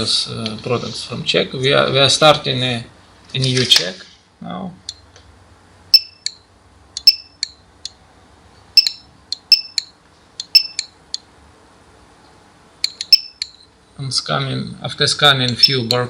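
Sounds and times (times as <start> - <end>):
barcode scanner beeps: 5.9 - 6.4, 7.0 - 7.6, 8.8 - 11.0, 12.8 - 13.7.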